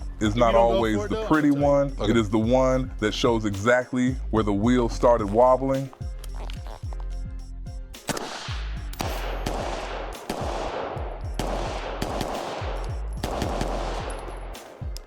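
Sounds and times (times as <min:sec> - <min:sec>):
rifle shots: 0:08.0 - 0:15.0.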